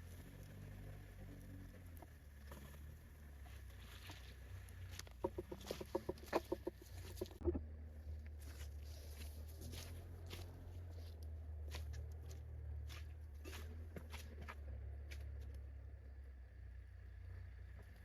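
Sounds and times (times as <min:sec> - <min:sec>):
bird clucking calls: 0:05.2 - 0:07.6.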